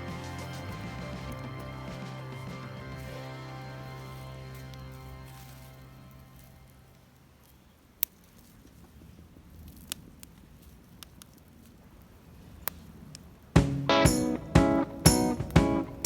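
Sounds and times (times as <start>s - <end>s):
acoustic guitar music: 0.0s - 6.4s, 13.6s - 16.0s.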